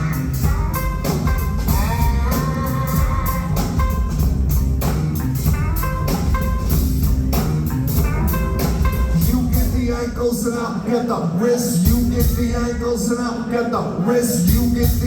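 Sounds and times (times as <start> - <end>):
electric guitar: 0.0 - 10.1
bass guitar: 0.0 - 10.5, 11.8 - 12.8
drum kit: 0.0 - 10.6, 11.7 - 13.1, 14.3 - 15.0.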